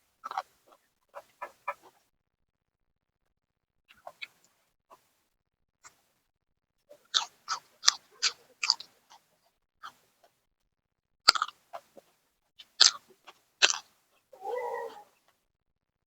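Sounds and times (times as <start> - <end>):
crunching raw vegetables: 7.0 - 9.2, 11.3 - 12.0, 12.6 - 15.0.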